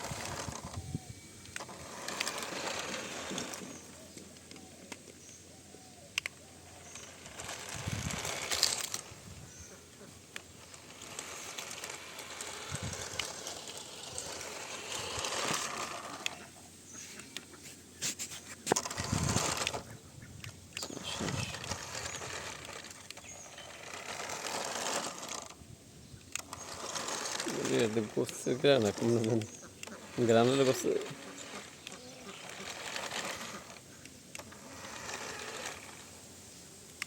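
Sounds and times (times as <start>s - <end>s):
toy motor and gears whirring: 0.0s - 37.0s
clicks: 6.1s - 9.1s.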